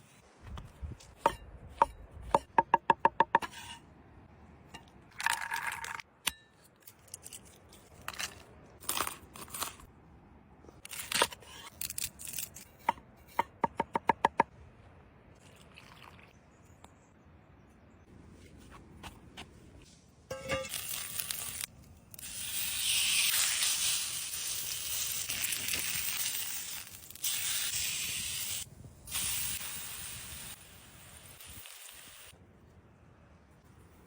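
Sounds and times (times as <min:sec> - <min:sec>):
knife scraping board: 0:03.4 - 0:03.8.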